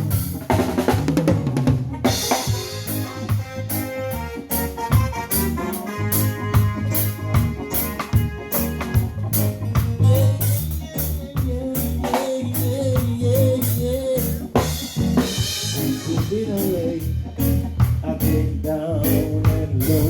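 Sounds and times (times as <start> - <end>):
bass line: 0.0 - 20.0
drum kit steady beat: 0.0 - 20.0
keyboard chords: 0.0 - 20.0
wavering melody line: 2.0 - 11.7.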